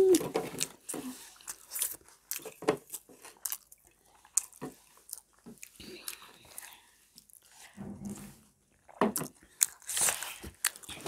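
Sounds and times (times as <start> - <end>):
person humming: 0.0 - 0.3
chewing with wet mouth clicks: 1.4 - 7.5, 8.8 - 11.0.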